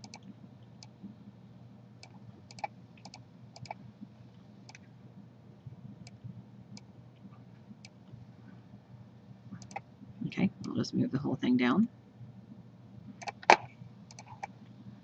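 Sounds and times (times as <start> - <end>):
computer mouse clicking: 0.0 - 1.0, 2.0 - 3.8, 9.6 - 9.8, 13.2 - 14.5
faint steady hum: 0.0 - 15.0.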